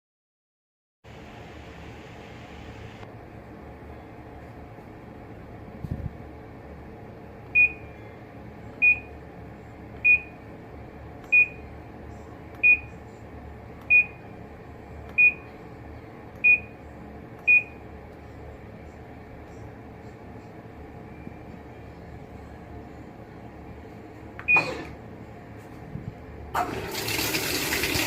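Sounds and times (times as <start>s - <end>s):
steady low hum: 1.1s - 26.6s
washing machine beeps: 7.5s - 9.2s, 10.0s - 10.5s, 11.2s - 11.7s, 12.5s - 13.1s, 13.8s - 14.3s, 15.1s - 15.6s, 16.4s - 16.8s, 17.4s - 17.8s, 21.0s - 21.8s, 24.4s - 25.0s.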